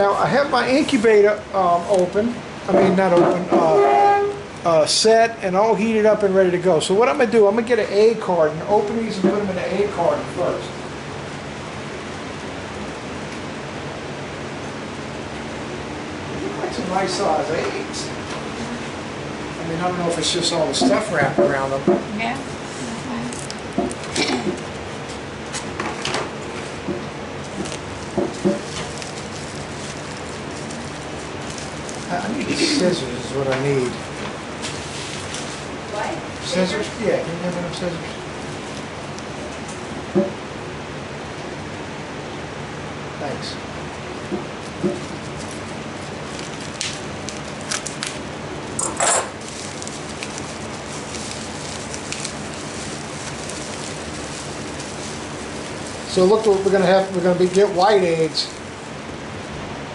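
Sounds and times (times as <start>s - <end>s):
steady background hiss: 0.0s - 59.9s
packing wrap rustling and crinkling: 22.7s - 39.9s, 44.5s - 59.0s.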